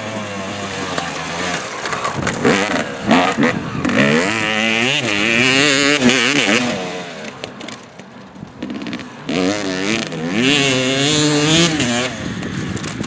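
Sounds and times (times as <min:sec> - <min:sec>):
motorbike engine revving: 0:00.0 - 0:07.7, 0:08.6 - 0:13.0.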